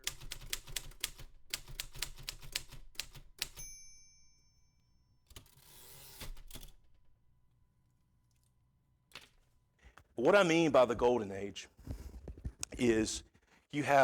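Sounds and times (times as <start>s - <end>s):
typewriter keys clacking: 0.0s - 3.8s
typewriter carriage bell ding: 3.4s - 6.4s
typewriter carriage sliding: 5.4s - 6.8s.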